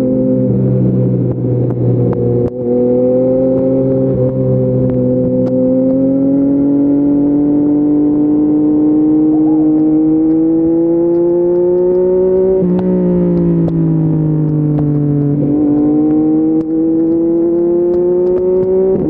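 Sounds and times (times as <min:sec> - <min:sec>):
motorcycle engine accelerating: 0:00.0 - 0:19.0.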